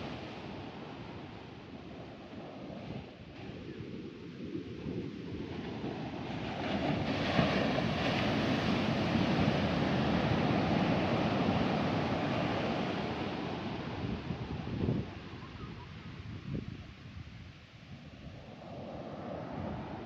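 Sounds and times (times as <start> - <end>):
sea waves breaking on shore: 0.0 - 3.1, 5.2 - 16.1, 18.3 - 20.0.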